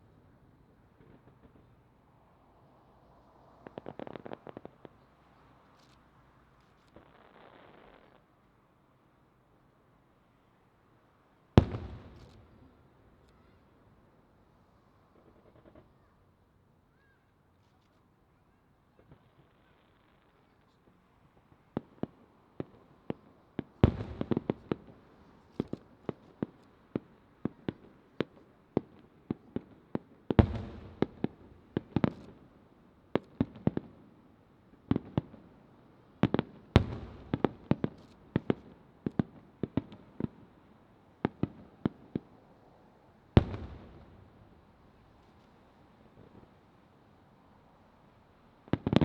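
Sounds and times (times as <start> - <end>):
fireworks bursting with echo: 11.6 - 13.6, 21.8 - 34.0, 36.2 - 42.4, 43.3 - 46.6, 48.6 - 49.0.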